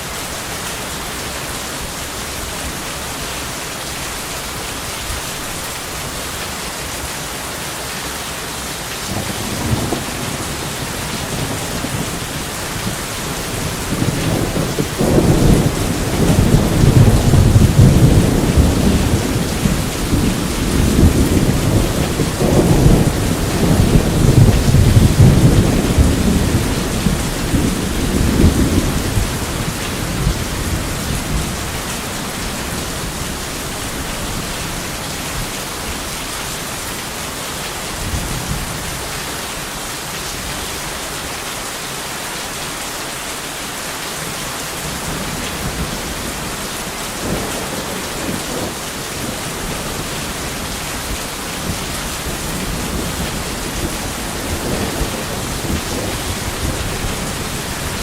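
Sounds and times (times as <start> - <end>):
heavy rain hissing: 0.0 - 58.0
thunder rumbling: 9.0 - 36.0, 44.8 - 58.0.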